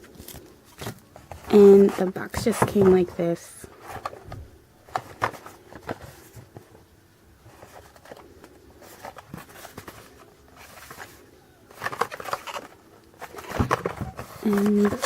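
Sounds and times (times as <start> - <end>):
packaging rustling: 0.0 - 6.8, 7.4 - 15.0
packaging clicks: 7.6 - 15.0.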